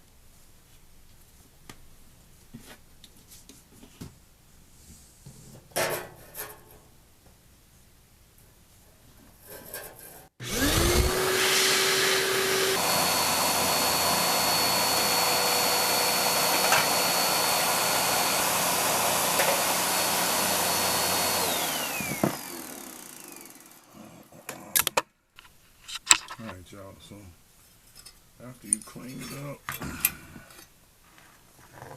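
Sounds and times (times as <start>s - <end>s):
small electric motor tool whining: 10.4s - 24.0s.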